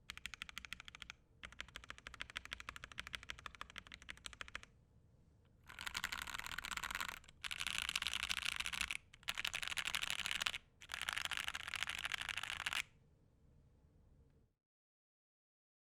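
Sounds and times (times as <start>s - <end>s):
muted keyboard clacking: 0.0s - 4.7s.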